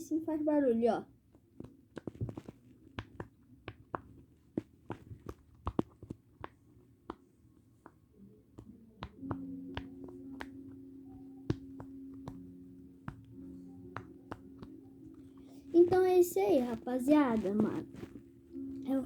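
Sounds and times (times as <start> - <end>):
low steady tone: 8.7 - 19.0.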